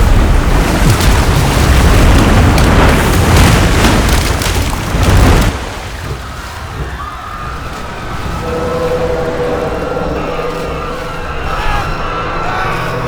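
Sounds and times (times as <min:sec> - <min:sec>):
crashing rumble with crackles: 0:00.0 - 0:13.0.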